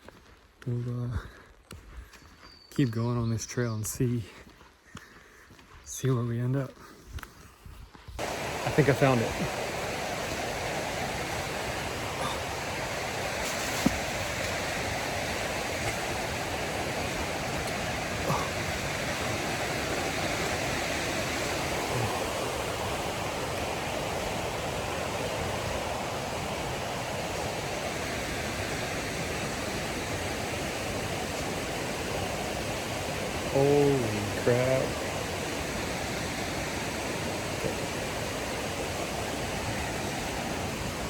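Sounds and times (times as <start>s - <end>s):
waterfall rushing: 8.2s - 41.0s.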